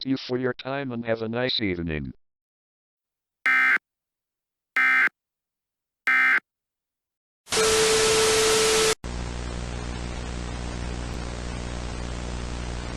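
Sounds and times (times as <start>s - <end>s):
data tone bursts: 3.5s - 3.8s, 4.8s - 5.1s, 6.1s - 6.4s.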